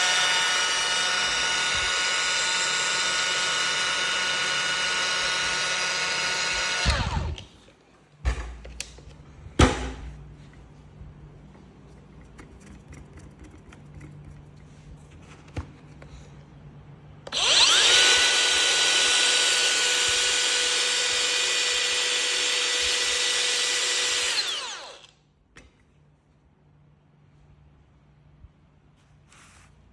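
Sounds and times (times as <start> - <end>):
angle grinder whining: 0.0 - 7.5, 17.3 - 25.1.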